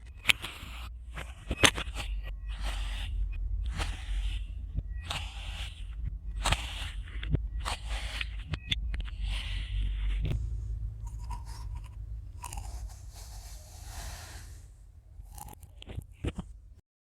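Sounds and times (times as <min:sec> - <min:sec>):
steady low rumble: 0:01.8 - 0:16.8
knife crunching through sand: 0:11.0 - 0:14.6.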